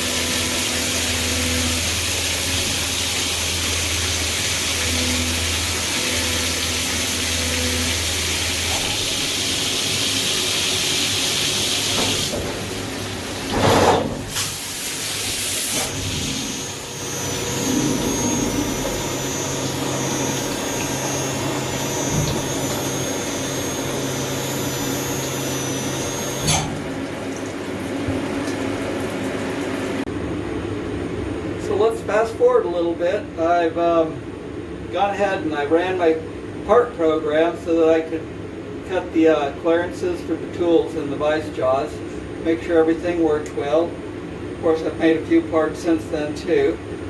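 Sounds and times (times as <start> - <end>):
milling machine cutting: 0.0 - 30.0.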